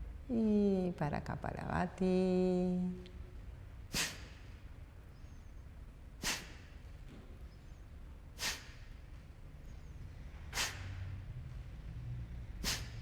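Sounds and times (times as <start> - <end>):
forceful nasal exhalations: 3.9 - 4.5, 6.2 - 6.8, 8.4 - 8.9, 10.5 - 11.0, 12.6 - 13.0.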